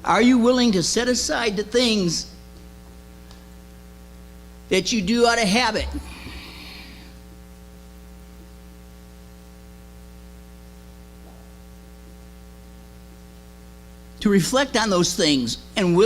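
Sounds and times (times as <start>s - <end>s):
electrical mains hum: 0.0s - 16.0s
man's voice echo: 5.0s - 7.0s.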